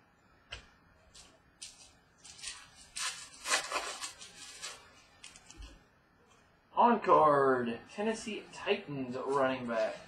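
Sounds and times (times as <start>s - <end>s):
cards rustling and swishing: 1.1s - 5.8s.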